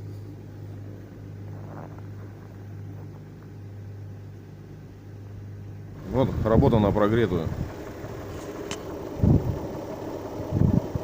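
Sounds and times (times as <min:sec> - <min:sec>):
car engine idling: 0:05.7 - 0:11.0.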